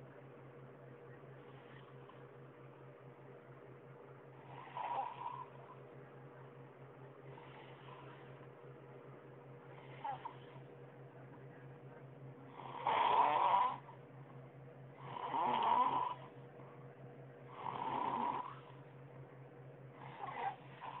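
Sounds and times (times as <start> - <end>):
person snoring: 4.4 - 5.6, 9.7 - 10.6, 12.5 - 13.9, 15.0 - 16.3, 17.5 - 18.7, 20.0 - 21.0.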